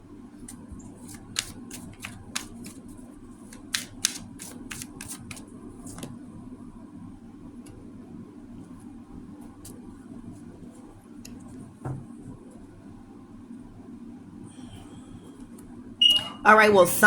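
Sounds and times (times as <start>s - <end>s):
steady low hum: 0.0s - 17.0s
cards clicking and snapping: 0.5s - 6.1s.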